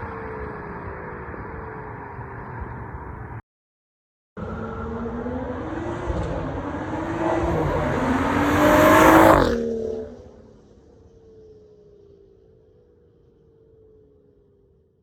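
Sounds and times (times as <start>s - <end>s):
car engine accelerating hard: 4.4s - 10.4s.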